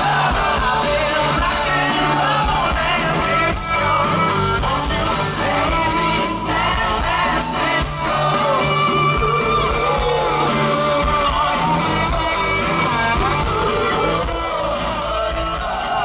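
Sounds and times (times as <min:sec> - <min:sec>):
person singing long held lines: 0:00.0 - 0:16.0
rock band playing live: 0:00.0 - 0:16.0.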